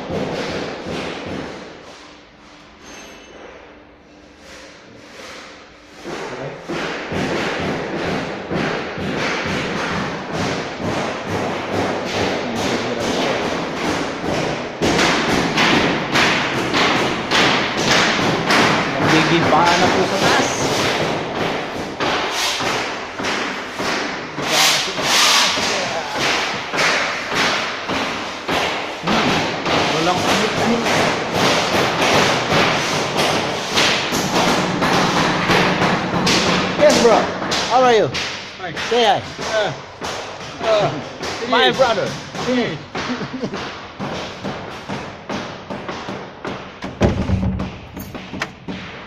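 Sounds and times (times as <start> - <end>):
hammer blows on masonry: 4.4 - 49.0
hard demolition strikes: 6.0 - 49.0.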